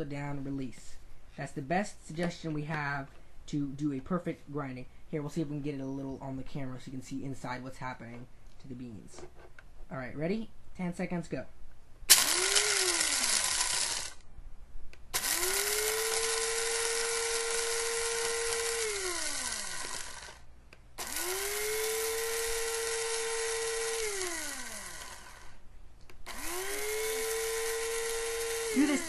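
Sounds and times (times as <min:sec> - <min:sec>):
coffee grinder whirring: 0:12.1 - 0:14.2, 0:15.2 - 0:20.4, 0:21.0 - 0:25.6, 0:26.3 - 0:29.0.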